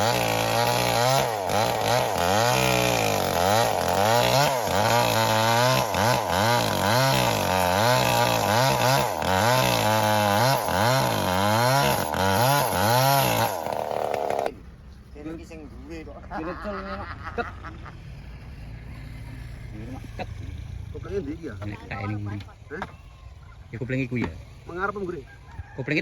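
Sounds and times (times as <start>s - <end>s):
small engine revving: 0.0s - 14.5s.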